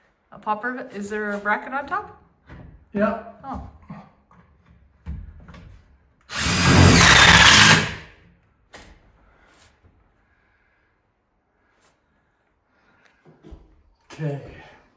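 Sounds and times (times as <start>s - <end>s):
power drill running: 6.3s - 8.1s.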